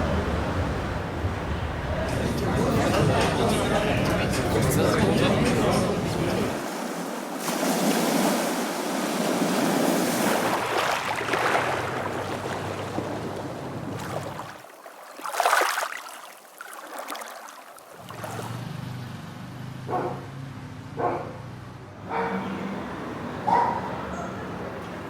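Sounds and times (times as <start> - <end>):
waves washing on shore: 0.0 - 18.8
wind: 0.0 - 25.0.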